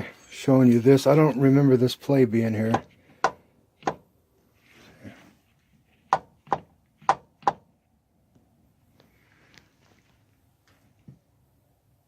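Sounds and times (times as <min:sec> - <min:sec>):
sharp knocks of hard objects: 0:02.7 - 0:04.1, 0:06.1 - 0:07.7
soft rustle: 0:04.4 - 0:06.1, 0:07.8 - 0:11.4.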